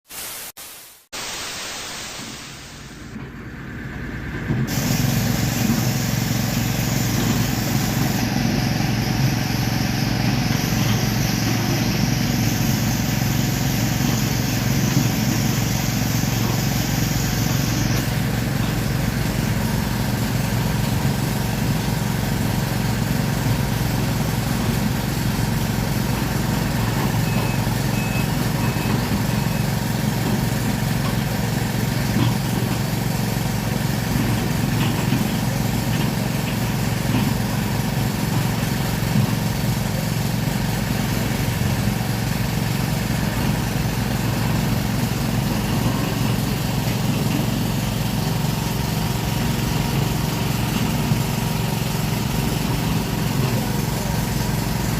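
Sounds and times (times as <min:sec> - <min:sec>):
excavator diesel engine running: 0:02.6 - 0:54.9
short high beeps: 0:27.2 - 0:29.7.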